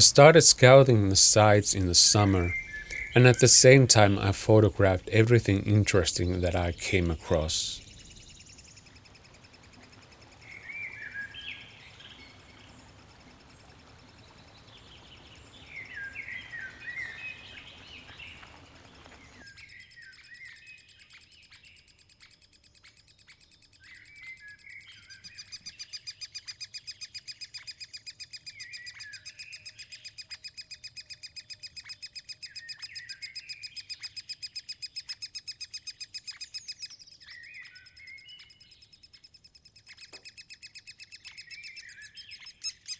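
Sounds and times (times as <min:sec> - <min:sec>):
birds chirping: 0:00.0 - 0:08.7.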